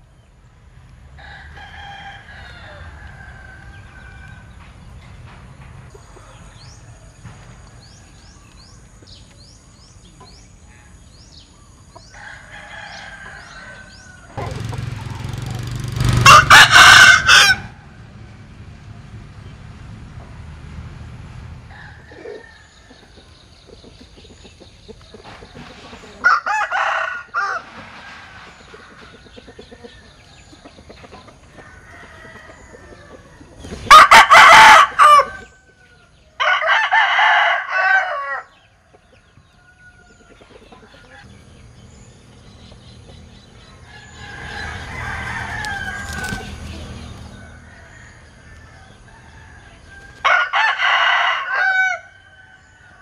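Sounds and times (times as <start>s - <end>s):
rooster crowing: 1.2s - 4.6s, 12.1s - 15.6s, 16.2s - 18.0s, 21.6s - 23.2s, 26.2s - 28.4s, 31.5s - 38.6s, 43.7s - 53.0s.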